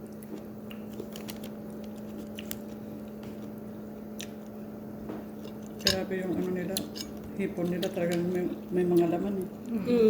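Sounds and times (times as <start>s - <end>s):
chewing and biting: 0.0s - 4.6s.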